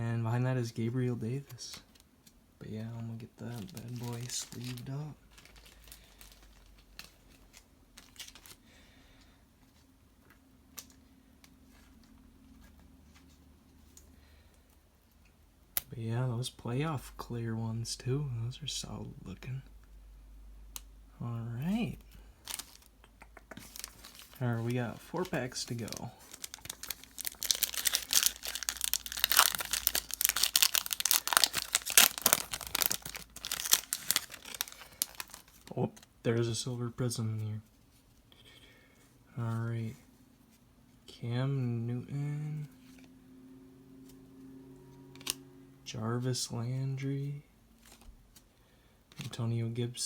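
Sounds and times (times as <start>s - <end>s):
low steady hum: 0.0s - 50.0s
foil wrapper crinkling: 3.5s - 8.8s, 22.4s - 22.9s, 23.6s - 35.8s
card sliding into plastic sleeve: 45.1s - 45.4s.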